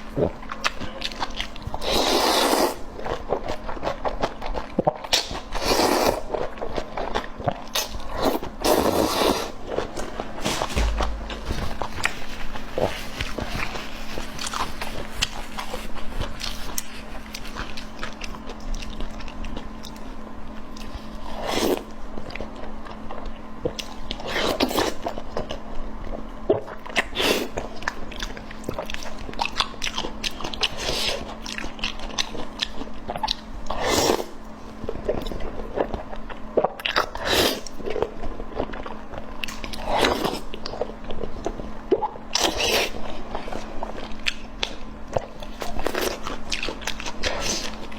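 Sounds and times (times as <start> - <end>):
person chewing food: 0.0 - 12.2, 26.4 - 47.9.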